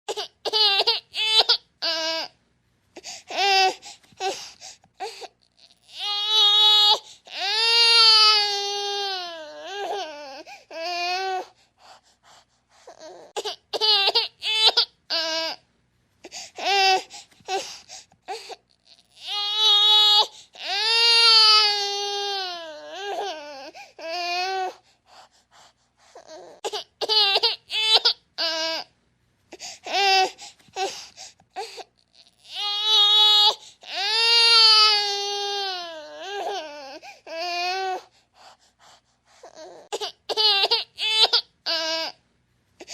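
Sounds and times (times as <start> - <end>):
infant crying: 0.1 - 2.3, 3.3 - 11.6, 12.8 - 15.6, 16.6 - 17.7, 18.3 - 24.8, 26.1 - 28.9, 29.8 - 31.0, 31.6 - 38.1, 39.4 - 42.2.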